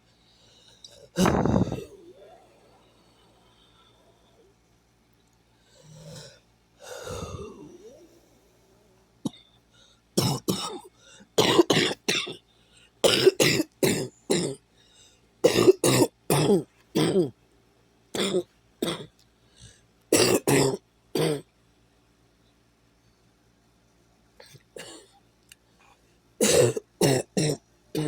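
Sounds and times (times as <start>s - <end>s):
person coughing: 1.1s - 2.0s, 10.2s - 12.4s, 13.0s - 14.6s, 15.5s - 17.3s, 18.2s - 19.1s, 20.1s - 21.5s, 26.4s - 28.0s.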